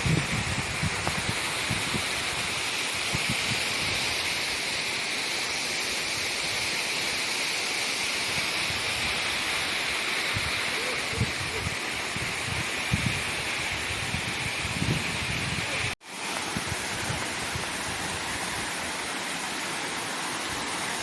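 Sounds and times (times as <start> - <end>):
waterfall rushing: 0.0 - 21.0.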